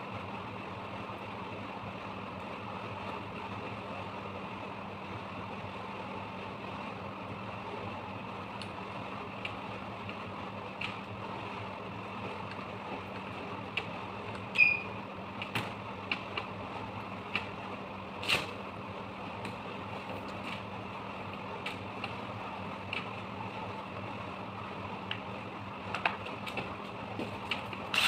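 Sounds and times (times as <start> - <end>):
steady background hum: 0.0 - 28.0
short high squeak: 14.5 - 15.0.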